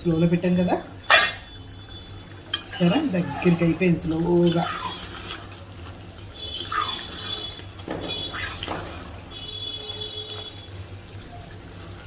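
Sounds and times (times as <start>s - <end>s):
ladle scraping a pot: 2.5s - 3.6s, 4.3s - 5.6s, 6.4s - 9.3s.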